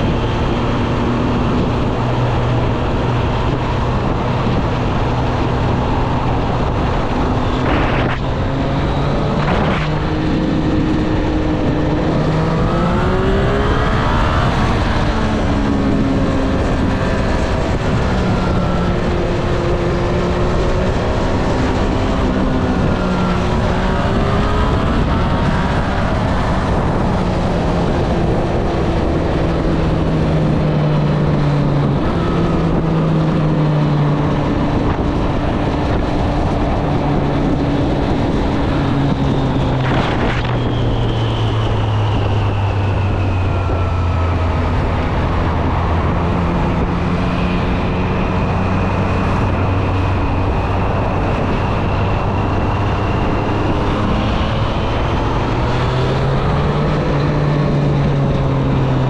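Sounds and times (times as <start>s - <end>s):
wind rushing over microphone: 0.0s - 59.0s.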